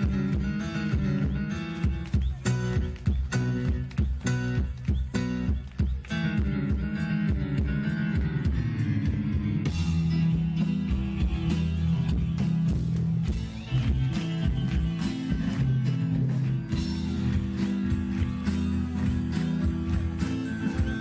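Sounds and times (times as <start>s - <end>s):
bass guitar: 0.0s - 21.0s
electric guitar: 0.0s - 21.0s
drums and cymbals: 9.6s - 21.0s.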